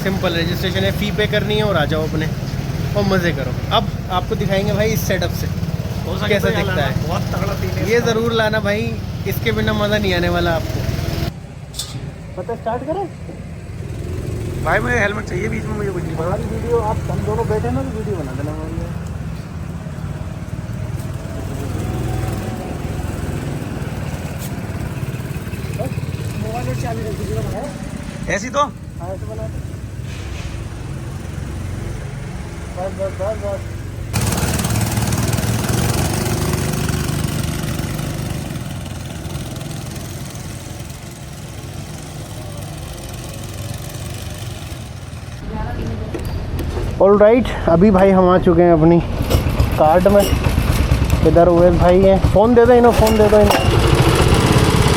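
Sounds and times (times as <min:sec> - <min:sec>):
go-kart engine running: 0:00.0 - 0:11.4, 0:13.4 - 0:29.9, 0:32.4 - 0:46.7, 0:48.8 - 0:54.9.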